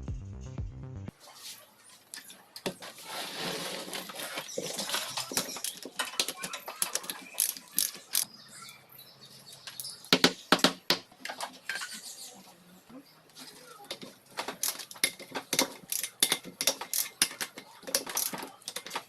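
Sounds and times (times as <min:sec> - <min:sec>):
scraping on metal parts: 0:01.9 - 0:08.3, 0:13.4 - 0:19.0
metal clicks and clinks: 0:05.1 - 0:08.3, 0:13.9 - 0:19.0.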